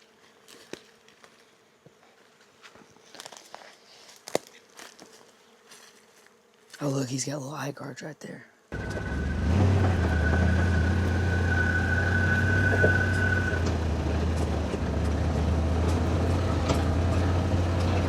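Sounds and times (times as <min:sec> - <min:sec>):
vehicle engine droning: 0:08.7 - 0:18.0
thin high whine: 0:08.8 - 0:14.8.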